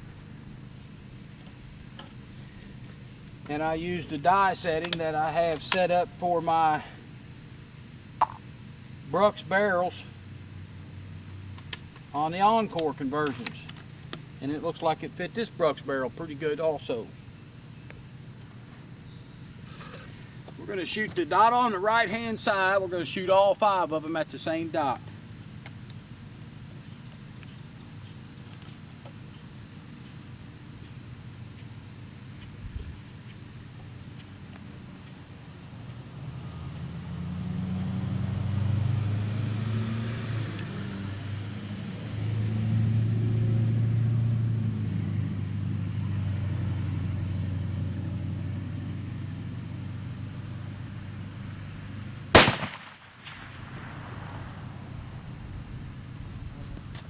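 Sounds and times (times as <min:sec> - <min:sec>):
rifle shot crack: 0:52.3 - 0:54.4.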